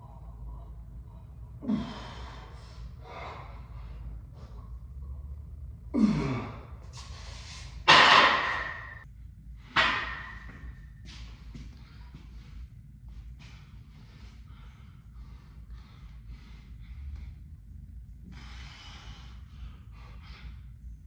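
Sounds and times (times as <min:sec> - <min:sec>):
man grunting: 0:05.9 - 0:06.7.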